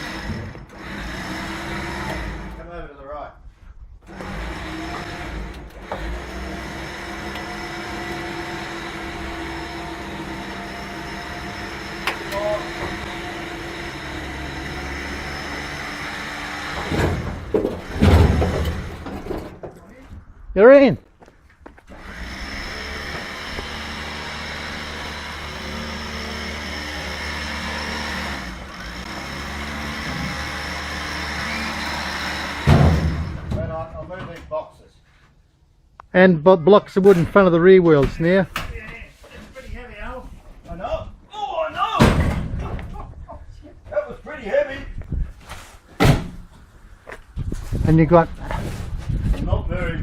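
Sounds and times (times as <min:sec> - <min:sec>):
motor humming: 0:00.0 - 0:02.6, 0:04.1 - 0:19.0, 0:21.9 - 0:33.4.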